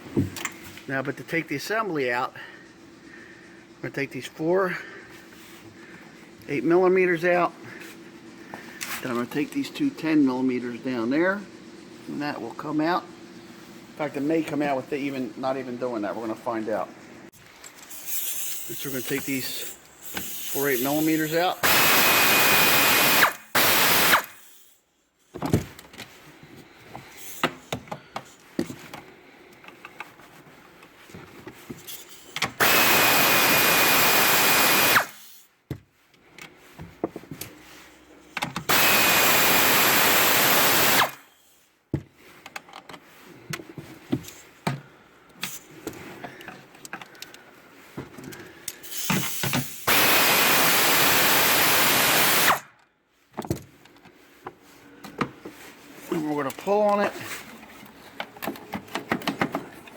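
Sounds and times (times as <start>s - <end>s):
power drill spinning bolts: 17.5s - 24.8s, 31.8s - 35.4s, 38.4s - 41.2s, 48.3s - 52.7s
clicks and handling knocks: 57.5s - 59.9s.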